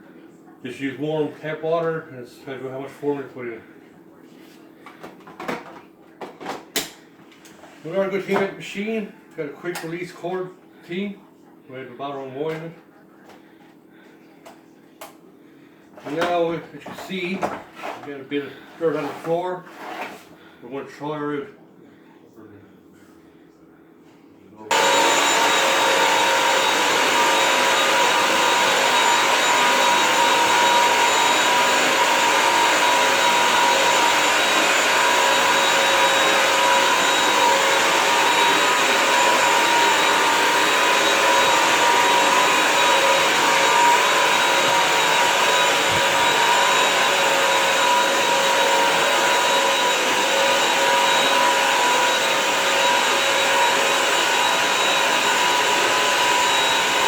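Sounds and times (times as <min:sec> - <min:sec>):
wet-dry vacuum running: 0:24.7 - 0:57.0.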